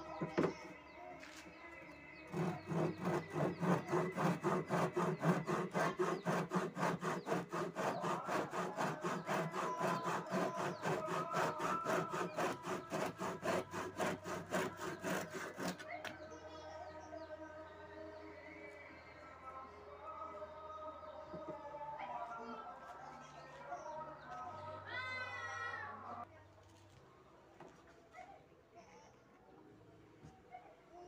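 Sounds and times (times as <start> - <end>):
rapid rasping strokes: 2.3 - 15.9.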